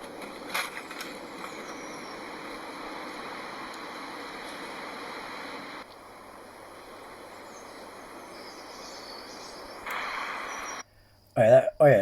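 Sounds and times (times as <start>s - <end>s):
wind rushing outdoors: 0.0s - 10.9s
faint high chirps: 7.1s - 11.6s.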